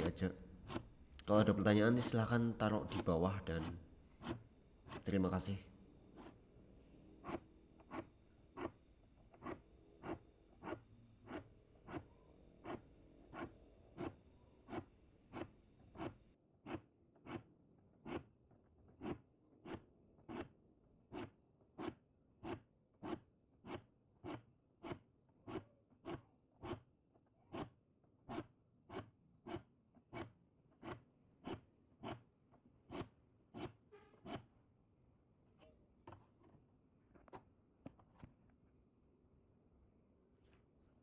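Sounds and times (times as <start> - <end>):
file sharpening saw teeth: 0.0 - 5.2, 7.2 - 8.8.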